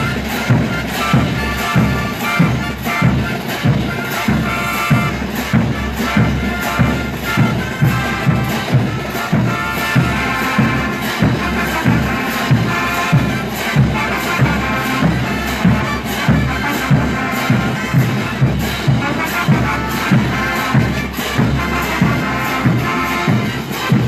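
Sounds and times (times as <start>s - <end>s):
brass band music: 0.0s - 24.0s
steady drum beat: 0.0s - 24.0s
tuba bass: 11.4s - 13.4s, 19.0s - 21.0s.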